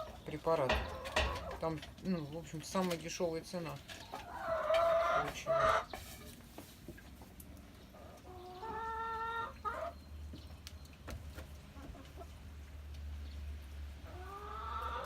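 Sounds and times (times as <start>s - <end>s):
farm animal calling: 0.0s - 6.2s, 7.8s - 10.1s, 14.0s - 15.0s.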